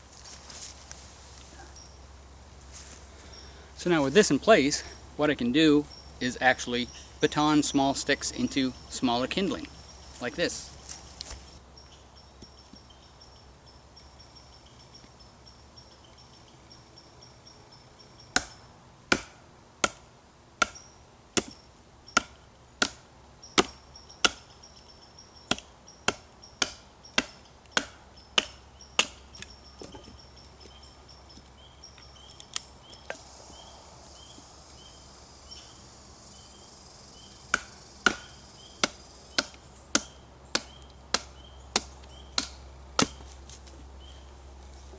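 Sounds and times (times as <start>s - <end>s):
knife batoning wood knocks: 18.4s - 20.0s, 25.5s - 29.2s, 37.5s - 43.2s.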